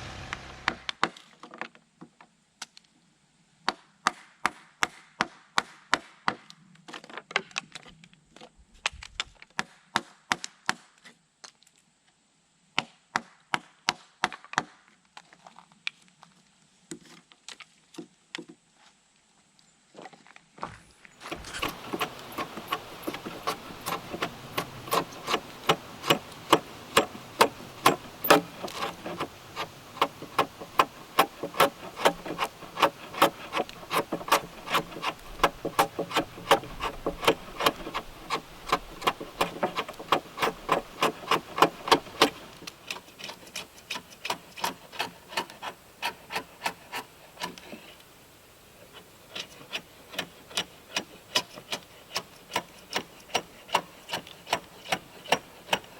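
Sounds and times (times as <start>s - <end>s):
mallet striking chisel into wood: 21.4s - 42.6s.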